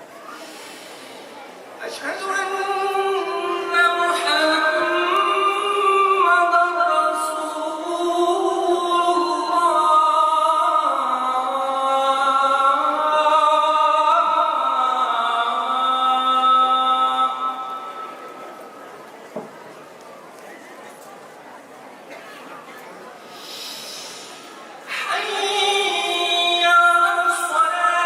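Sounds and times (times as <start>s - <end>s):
call to prayer chanting: 1.8s - 18.8s, 24.8s - 28.0s.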